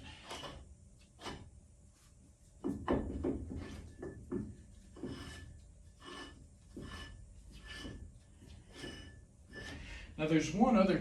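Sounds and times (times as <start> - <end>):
metal scraping and rubbing: 4.7 - 10.1.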